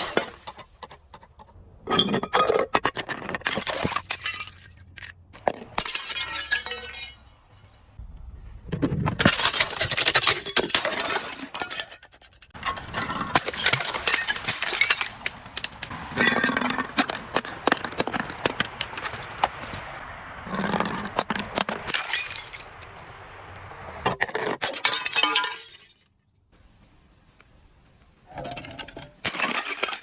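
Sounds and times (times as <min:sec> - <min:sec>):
glass bottles breaking: 0:01.9 - 0:08.0, 0:09.1 - 0:17.1, 0:21.8 - 0:23.2, 0:24.2 - 0:26.1, 0:28.5 - 0:30.0
clinking glass shards: 0:03.4 - 0:07.9, 0:21.9 - 0:23.2, 0:28.5 - 0:30.0.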